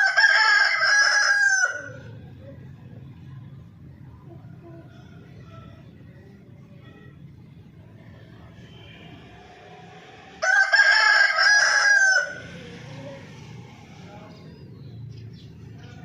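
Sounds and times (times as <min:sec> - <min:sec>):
rooster crowing: 0:00.0 - 0:02.1, 0:10.4 - 0:12.6.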